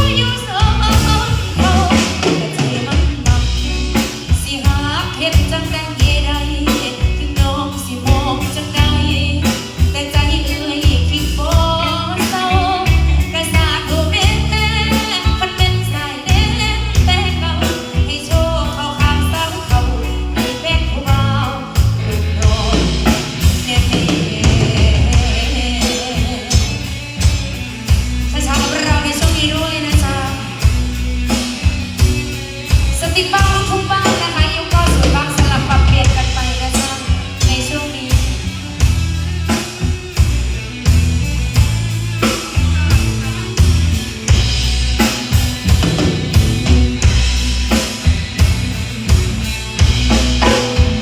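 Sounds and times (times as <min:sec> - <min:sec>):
person singing: 0:00.0 - 0:27.4, 0:28.2 - 0:38.9
live band playing: 0:00.0 - 0:51.0.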